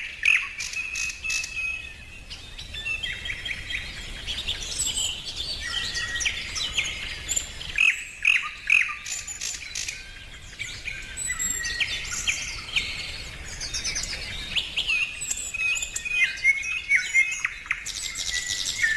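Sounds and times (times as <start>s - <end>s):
birds chirping and singing: 0.0s - 18.9s.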